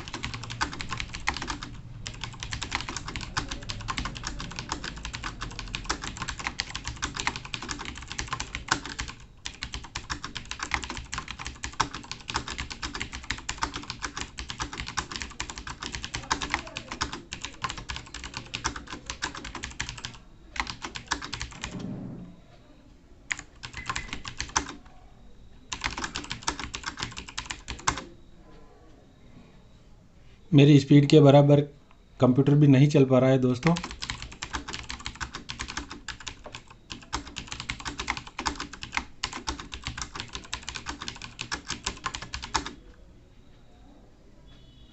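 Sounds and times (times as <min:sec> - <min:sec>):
fast typing on a keyboard: 0:00.0 - 0:21.7, 0:23.3 - 0:24.8, 0:25.7 - 0:28.1, 0:33.6 - 0:42.8.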